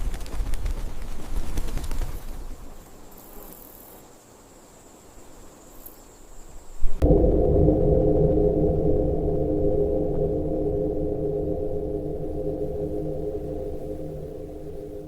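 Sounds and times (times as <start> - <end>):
low ambient music drone: 7.0 - 15.0.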